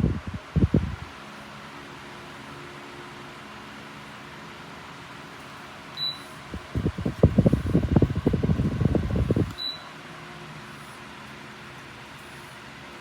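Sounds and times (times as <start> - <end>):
wind buffeting microphone: 0.0 - 1.1, 6.5 - 9.6
fan humming: 0.0 - 13.0.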